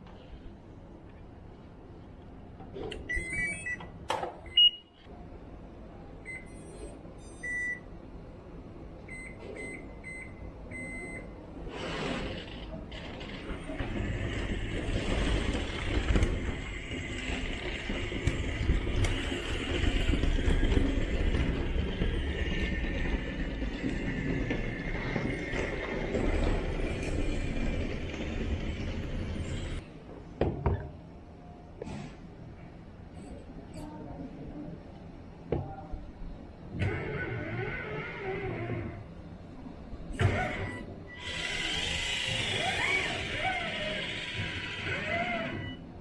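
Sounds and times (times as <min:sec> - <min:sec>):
short electronic beeps: 0:04.5 - 0:05.0
toy excavator mechanical drone: 0:40.3 - 0:45.8.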